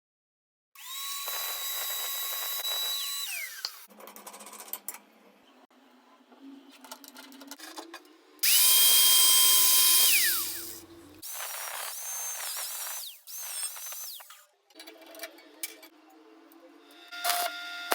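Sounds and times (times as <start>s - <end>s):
angle grinder whining: 0.8s - 3.9s, 8.4s - 14.4s, 16.9s - 17.9s.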